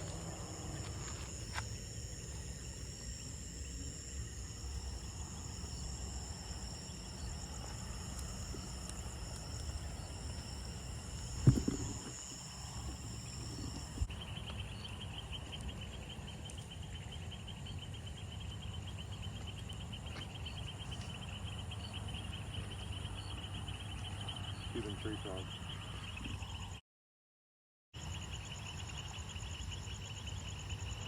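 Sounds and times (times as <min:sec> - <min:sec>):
insects buzzing and trilling: 0:00.0 - 0:26.8, 0:28.0 - 0:31.0
thump: 0:11.4 - 0:12.1.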